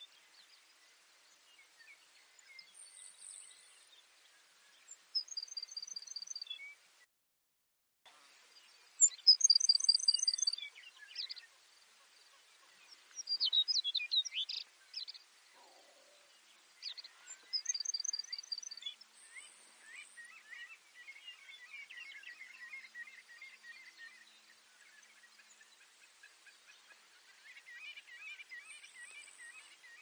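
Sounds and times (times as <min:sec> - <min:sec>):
birds twittering: 0:08.3 - 0:30.0
sparrow singing buzzy trill: 0:09.0 - 0:11.4, 0:16.8 - 0:19.0.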